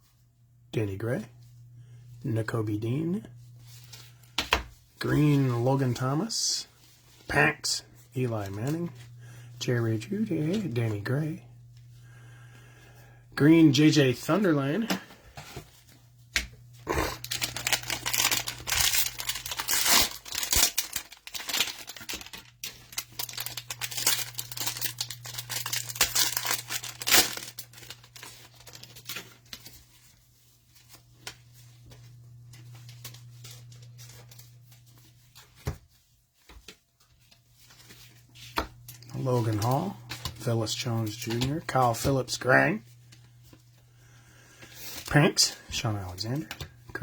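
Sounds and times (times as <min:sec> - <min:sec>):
low steady hum: 0:00.0 - 0:35.6, 0:37.2 - 0:47.0
cards being handled: 0:14.8 - 0:43.7
cellophane wrapper tearing and crinkling: 0:16.8 - 0:29.8.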